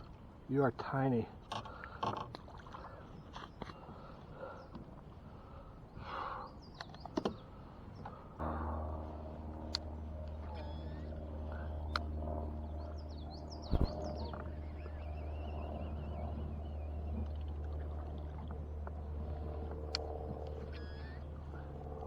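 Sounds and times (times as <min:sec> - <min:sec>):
steady low hum: 0:02.6 - 0:22.0
birds singing and chirping: 0:06.0 - 0:08.2, 0:10.3 - 0:17.5, 0:20.0 - 0:21.7
faint clicks: 0:06.7 - 0:07.4, 0:11.5 - 0:12.2, 0:19.6 - 0:22.0.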